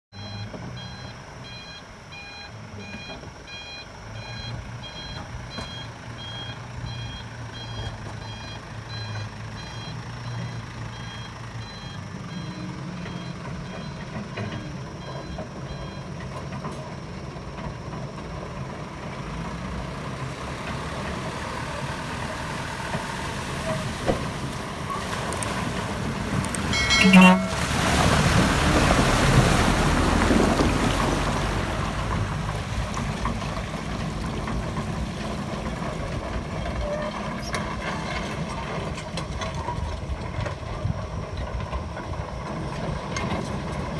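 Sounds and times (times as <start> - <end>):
back-up alarm beeping: 0.2 - 16.2, 26.4 - 27.9
heavy machine engine running: 0.2 - 43.9
rushing noise: 23.4 - 32.9.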